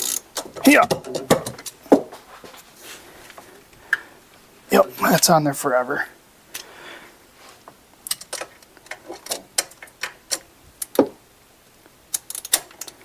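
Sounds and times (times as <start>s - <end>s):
hand ratchet clicking: 0.0s - 1.8s, 12.1s - 13.0s.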